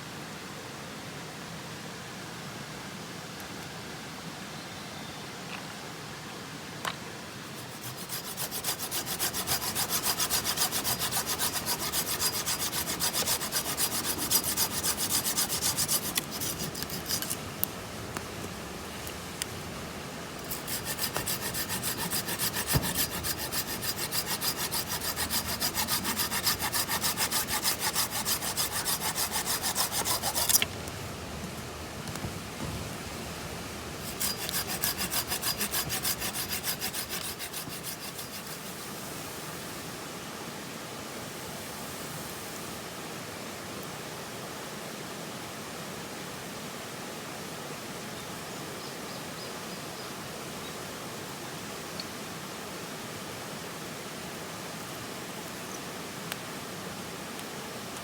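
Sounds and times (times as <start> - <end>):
saw cutting wood: 7.6 - 17.4, 20.4 - 30.7, 34.0 - 38.9.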